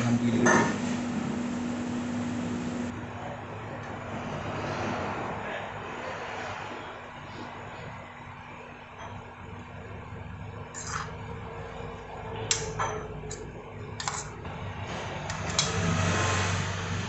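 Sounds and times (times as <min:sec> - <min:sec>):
metal spoon scraping a plate: 0:10.7 - 0:11.2
passing road traffic: 0:14.5 - 0:17.0.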